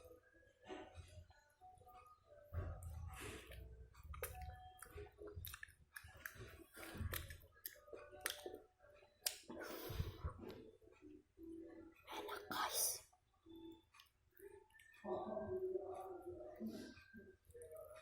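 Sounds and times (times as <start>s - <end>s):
chewing: 2.8s - 8.6s
wet mouth clicks: 4.1s - 6.4s.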